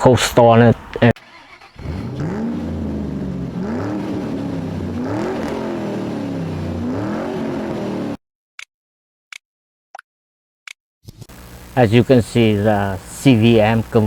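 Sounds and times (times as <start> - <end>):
engine revving: 1.3 - 8.2.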